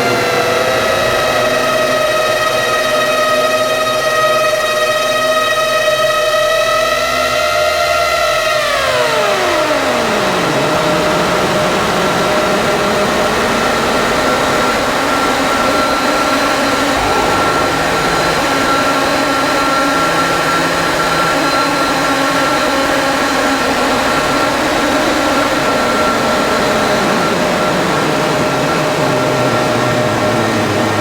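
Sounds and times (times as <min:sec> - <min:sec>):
hissing synth noise drone: 0:14.2 - 0:29.6
steady high synth tones: 0:16.9 - 0:21.5
tones sweeping down in pitch: 0:17.0 - 0:19.4.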